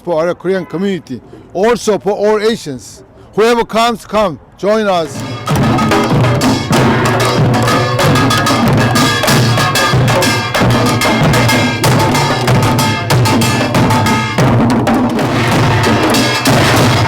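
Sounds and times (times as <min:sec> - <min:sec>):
drums beating fast rhythm: 0:05.0 - 0:17.0
small gongs ringing: 0:05.2 - 0:14.6.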